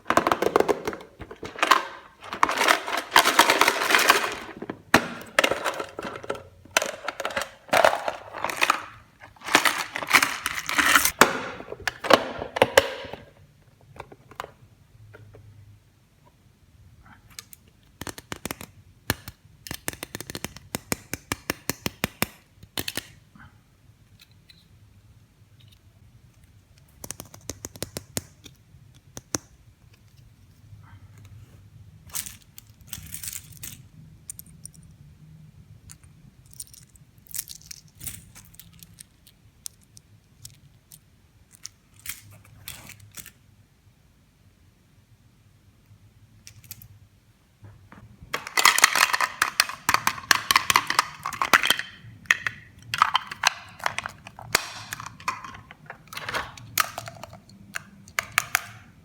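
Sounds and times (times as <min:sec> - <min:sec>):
plastic toy pieces clicking: 0:00.1 - 0:11.2, 0:17.4 - 0:23.2, 0:48.4 - 0:58.9.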